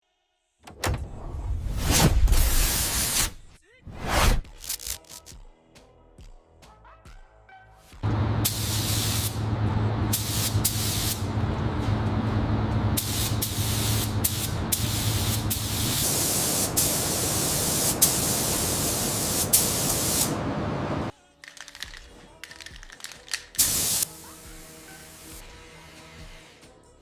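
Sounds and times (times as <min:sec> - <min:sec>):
low hum: 0:08.0 - 0:16.0
paint spray hissing: 0:08.4 - 0:09.4, 0:10.1 - 0:11.2, 0:13.0 - 0:20.4, 0:23.4 - 0:24.4.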